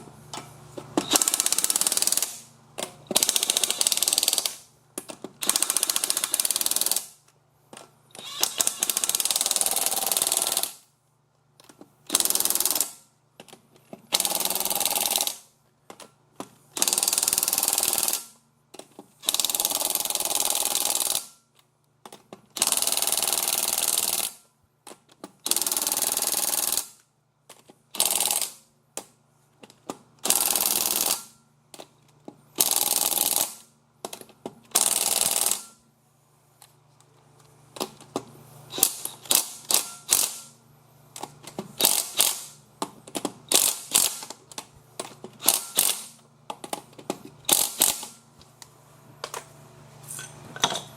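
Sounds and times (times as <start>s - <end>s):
impact wrench hammering: 1.0s - 7.2s, 8.2s - 10.8s.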